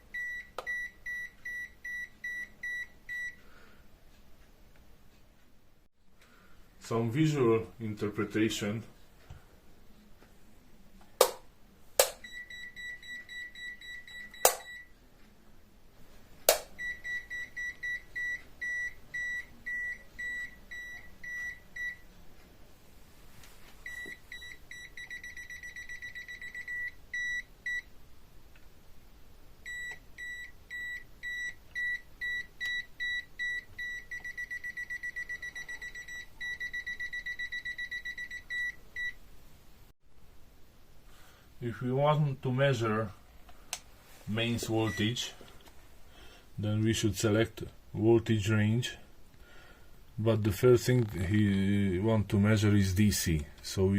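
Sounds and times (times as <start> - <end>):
multimeter buzzer beeping: 12.0 - 14.9, 29.7 - 39.1.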